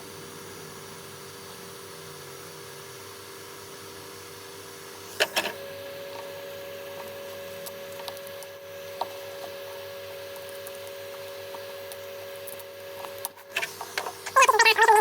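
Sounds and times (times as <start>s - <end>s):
heat gun humming: 5.0s - 15.0s.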